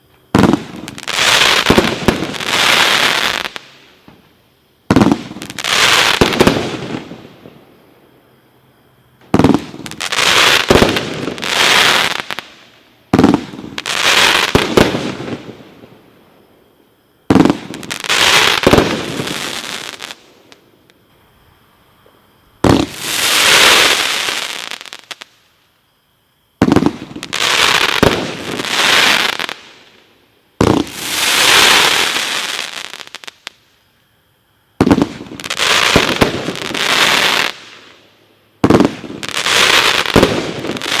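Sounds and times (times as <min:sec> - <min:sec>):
fireworks cracking and hissing: 0:00.0 - 0:07.8, 0:09.2 - 0:16.2, 0:17.2 - 0:21.4, 0:22.0 - 0:25.7, 0:26.6 - 0:34.0, 0:34.8 - 0:41.0.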